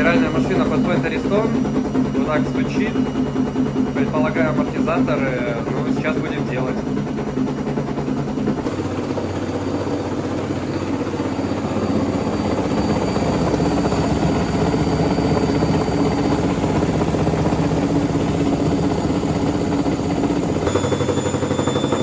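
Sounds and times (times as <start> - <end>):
rapid steady knocking: 0.0 - 22.0
washing machine drum spinning: 0.0 - 22.0.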